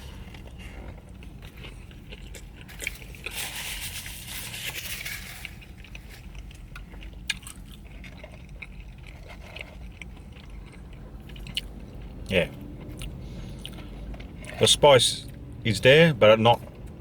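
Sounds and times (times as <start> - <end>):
chewing with small clicks: 0.2 - 3.3, 5.7 - 14.6.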